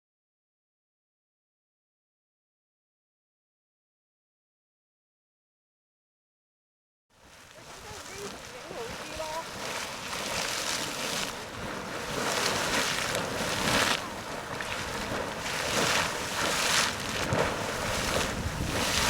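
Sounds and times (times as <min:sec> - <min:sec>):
geyser erupting with splashing water: 0:07.2 - 0:19.0.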